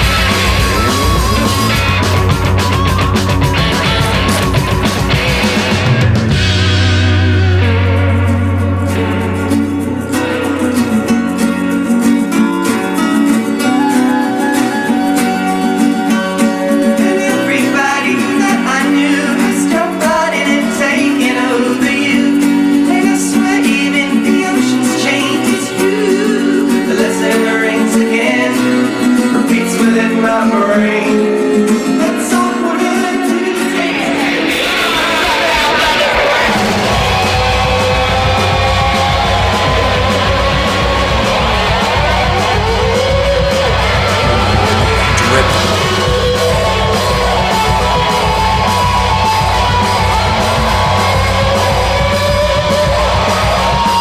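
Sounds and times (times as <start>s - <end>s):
bass and drums: 0.0s - 12.6s, 36.2s - 54.0s
guitar accompaniment: 0.0s - 54.0s
sustained low notes: 6.3s - 11.8s, 43.4s - 47.2s
person singing: 15.6s - 36.6s, 43.6s - 47.0s.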